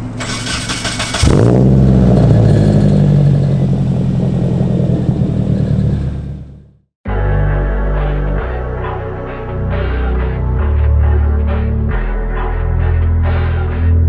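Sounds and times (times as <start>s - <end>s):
car engine running loudly: 0.0s - 6.8s
music: 7.0s - 14.0s.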